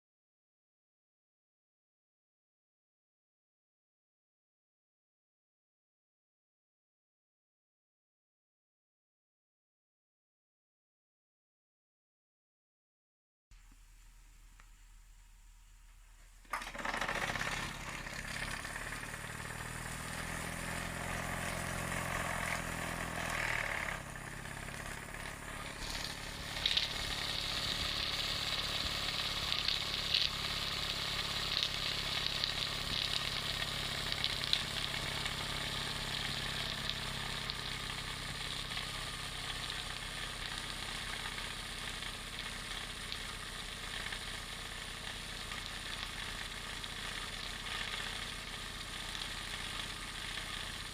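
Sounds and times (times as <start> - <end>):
steam hissing: 16.5 - 50.9.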